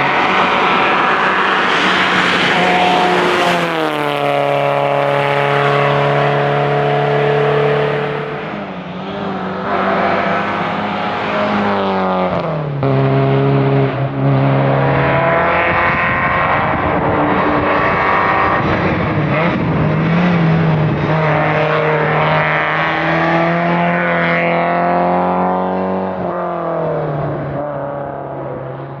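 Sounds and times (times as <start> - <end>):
race car engine revving: 0.0 - 29.0.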